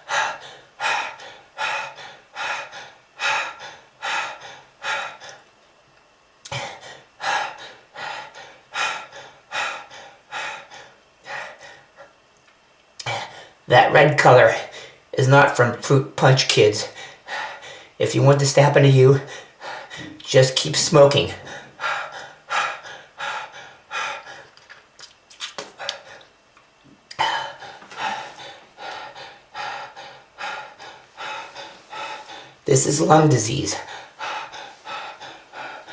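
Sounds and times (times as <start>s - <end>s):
harsh breathy coughing and gasping: 6.5s - 12.0s, 27.1s - 32.7s
sharp throat clicks: 13.0s - 13.3s.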